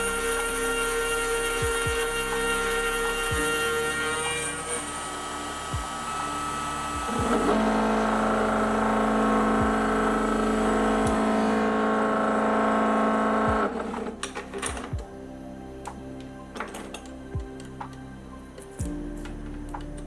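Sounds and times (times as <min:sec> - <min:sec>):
electric motor humming: 0:00.0 - 0:14.9.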